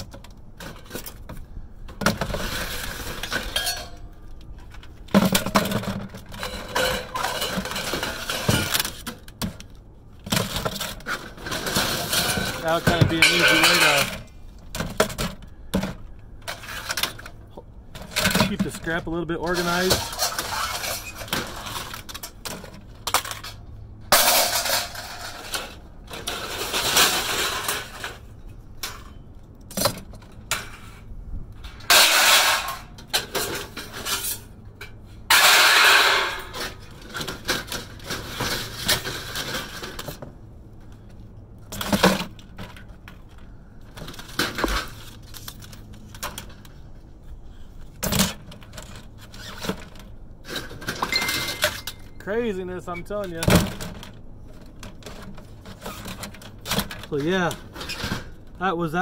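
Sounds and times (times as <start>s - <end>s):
rattling metal crashes: 2.0s - 4.1s, 5.1s - 9.6s, 10.2s - 31.0s, 31.6s - 40.2s, 48.0s - 52.3s
scrap metal clanking: 2.0s - 9.5s, 10.3s - 40.3s.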